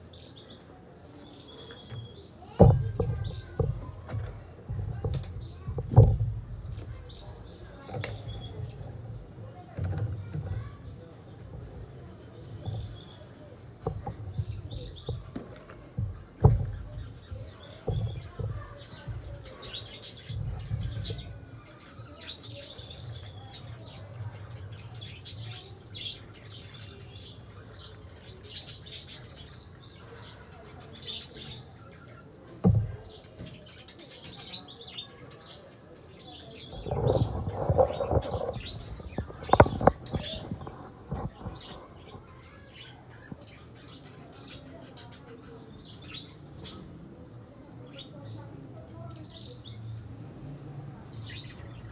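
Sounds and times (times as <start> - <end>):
small birds chirping: 0.0 - 51.9
low knocks and thumps: 2.5 - 21.5, 32.6 - 33.6, 36.7 - 42.6
rustling: 36.7 - 42.2
sharp taps or knocks: 36.8 - 42.2.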